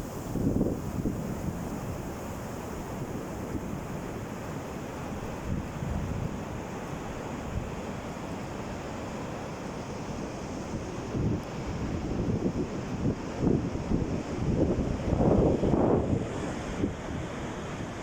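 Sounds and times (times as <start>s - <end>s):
wind on microphone: 0.0s - 4.4s, 10.7s - 18.0s
sea waves breaking on a beach: 0.0s - 18.0s.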